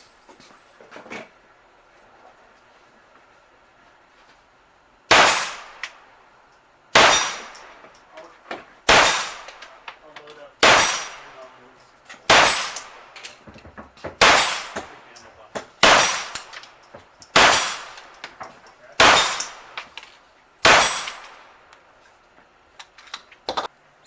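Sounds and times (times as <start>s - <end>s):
pistol shots: 5.1s - 6.1s, 6.9s - 7.8s, 8.9s - 9.8s, 10.6s - 11.5s, 12.2s - 13.4s, 14.2s - 15.1s, 15.8s - 18.4s, 19.0s - 19.9s, 20.6s - 21.6s
steel target ringing: 20.6s - 21.5s.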